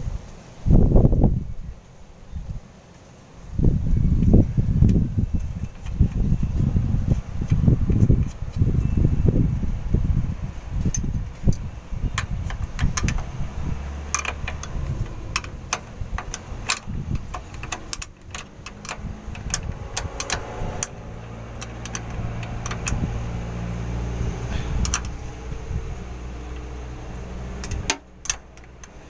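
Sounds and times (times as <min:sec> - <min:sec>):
steady low hum: 0:00.0 - 0:29.0
hands and tools clinking: 0:10.9 - 0:23.4, 0:24.3 - 0:25.7, 0:26.4 - 0:29.0.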